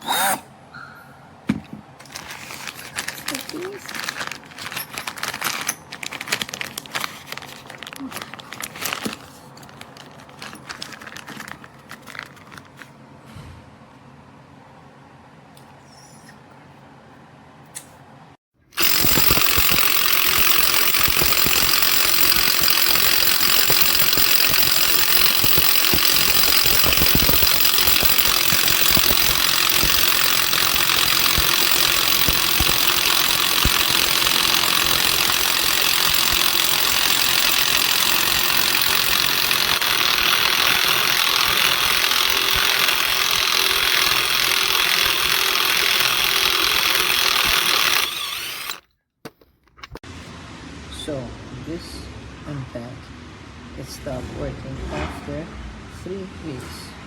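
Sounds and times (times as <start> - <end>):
mechanical running noise: 18.8 - 48.8.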